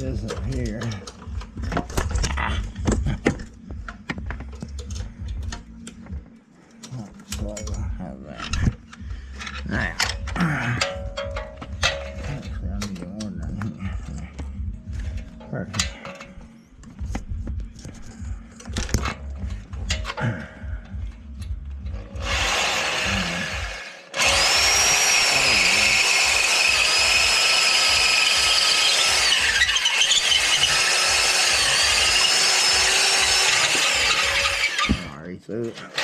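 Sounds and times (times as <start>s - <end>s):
electric drill boring metal: 21.9s - 35.2s.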